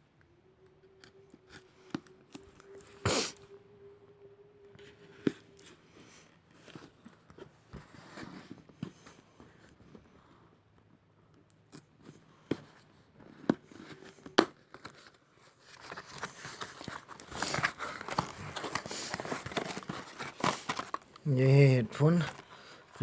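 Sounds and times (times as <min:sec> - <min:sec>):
packaging clicks and snaps: 0:13.3 - 0:21.3
wrapping crinkling and tearing: 0:13.7 - 0:23.0.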